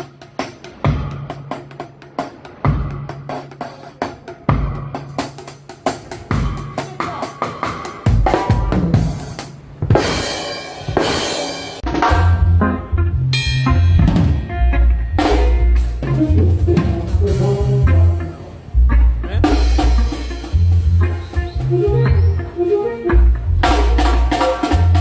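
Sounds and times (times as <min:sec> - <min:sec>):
deep bass notes: 0:11.8 - 0:25.0.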